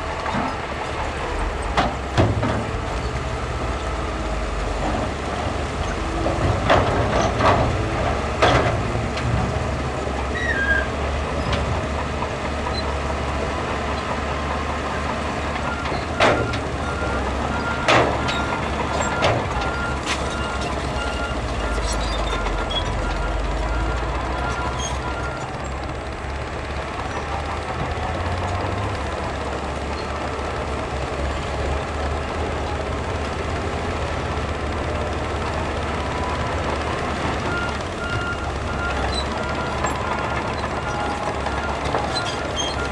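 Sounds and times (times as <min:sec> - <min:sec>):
heavy diesel machinery rumbling: 0:00.0 - 0:42.9
reversing alarm beeping: 0:15.4 - 0:25.4, 0:36.1 - 0:42.9.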